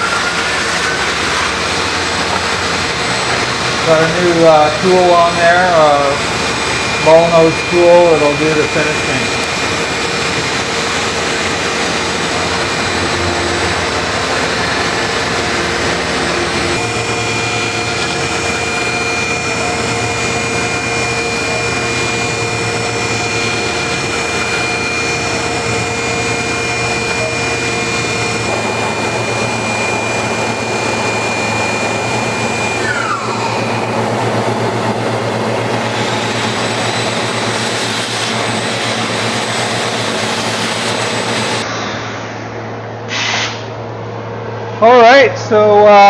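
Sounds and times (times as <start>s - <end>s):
dust collector rushing: 0.0s - 42.0s
cnc mill spindle whining: 0.0s - 43.0s.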